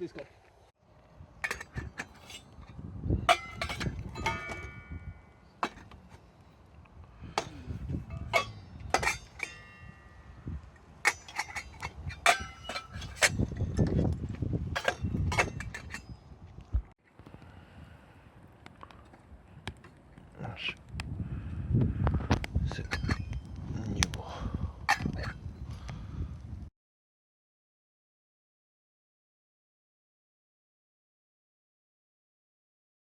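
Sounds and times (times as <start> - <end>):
low rumbling handling noise: 1.0 - 17.6
cookware and utensils clinking: 3.3 - 6.0, 7.4 - 10.4, 11.1 - 13.9.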